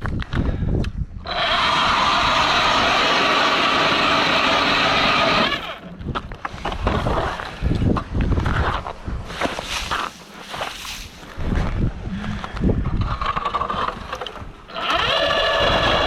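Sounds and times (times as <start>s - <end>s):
power ice auger drilling: 1.2s - 5.9s, 12.9s - 16.0s
knocks and shuffling: 6.0s - 12.6s.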